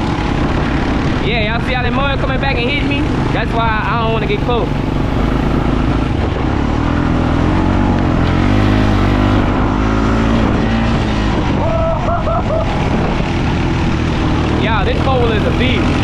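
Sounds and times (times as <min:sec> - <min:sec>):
atv engine revving: 0:00.0 - 0:16.0
heavy low rumble: 0:00.0 - 0:16.0.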